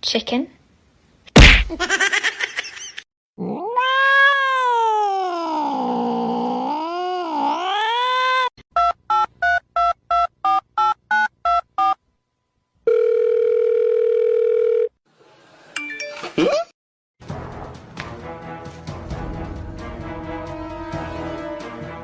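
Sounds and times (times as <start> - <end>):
cat yowling: 3.4 - 8.5
music: 17.2 - 22.0.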